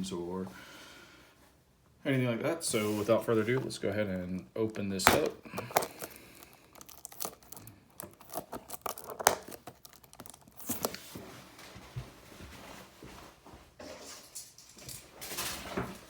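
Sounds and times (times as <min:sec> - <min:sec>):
plastic wrap tearing and crinkling: 0:05.0 - 0:11.2.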